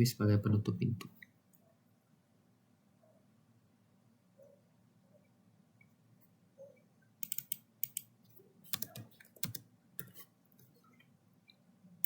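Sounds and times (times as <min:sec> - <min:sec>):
keyboard and mouse clicks: 0:07.2 - 0:08.1, 0:08.7 - 0:10.7.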